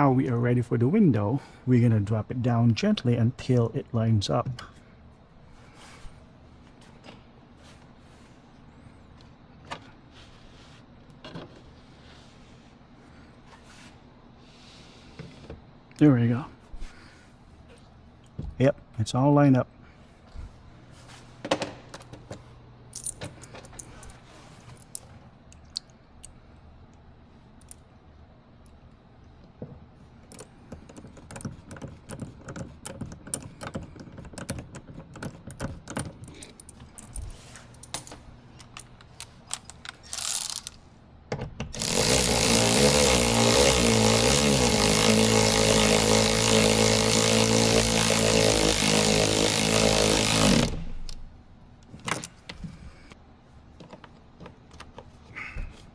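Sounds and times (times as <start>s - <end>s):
parts and tools clicking: 21.9s - 24.2s, 27.6s - 27.8s, 30.3s - 40.8s
electric motor whirring: 41.8s - 51.0s.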